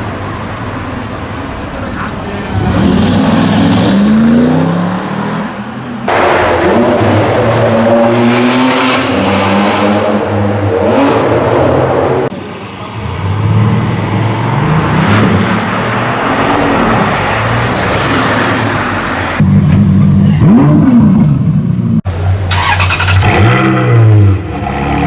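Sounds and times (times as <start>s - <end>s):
sports car engines revving: 0.0s - 25.0s
car accelerating: 2.5s - 12.3s.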